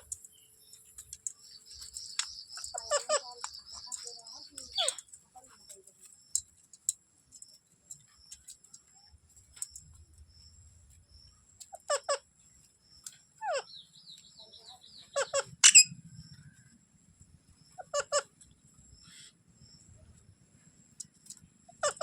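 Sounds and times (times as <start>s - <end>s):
parrot double calls: 15.1s - 15.9s
parrot shrill screech: 15.2s - 15.9s.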